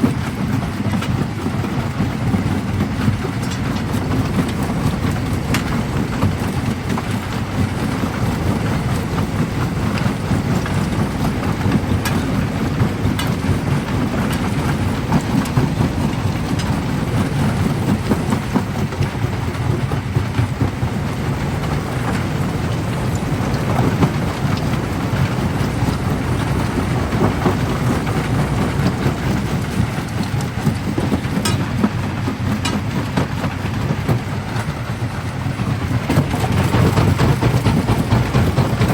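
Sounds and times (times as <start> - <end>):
jaw crusher rumbling: 3.9 - 35.0, 35.6 - 38.9.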